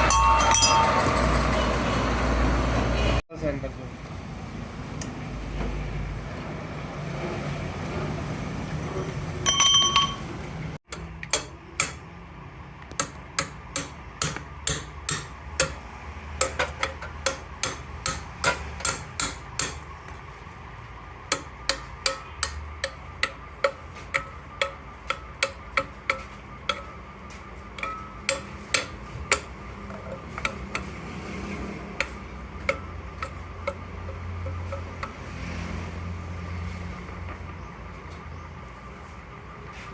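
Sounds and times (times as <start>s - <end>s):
hammer striking steel: 0.0s - 2.3s, 10.9s - 12.1s, 12.9s - 19.9s, 21.3s - 35.2s.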